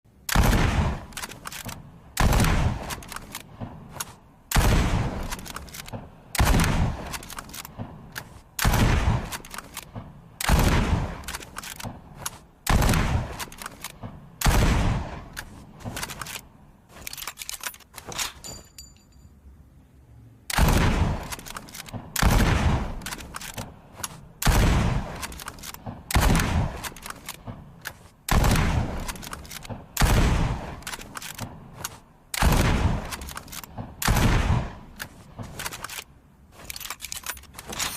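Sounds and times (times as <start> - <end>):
rifle shots with ringing tail: 0.3 - 3.0, 4.5 - 12.0, 12.7 - 16.0, 20.5 - 23.1, 28.3 - 31.6, 32.4 - 35.5
rifle bolt clicks: 0.3 - 14.6, 15.2 - 18.6, 20.5 - 34.3, 34.9 - 37.9.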